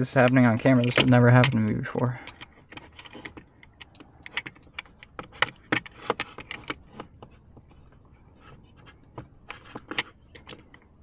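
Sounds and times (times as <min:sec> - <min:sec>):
screwdriver scraping metal clicks: 0:02.2 - 0:07.3, 0:09.4 - 0:10.9.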